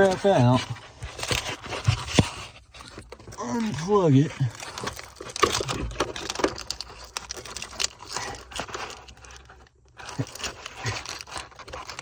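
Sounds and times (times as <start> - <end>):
rustling: 0.0 - 12.0.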